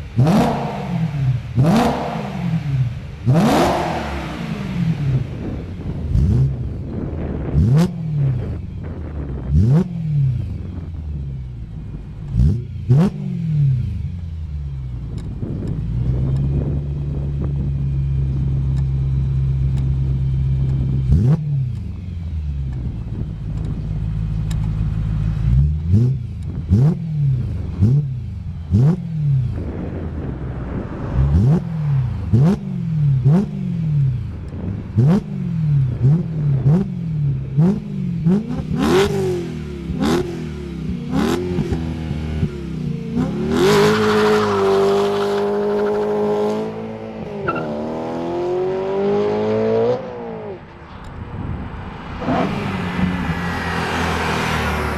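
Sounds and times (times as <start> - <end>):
car engine revving: 0.0 - 54.9.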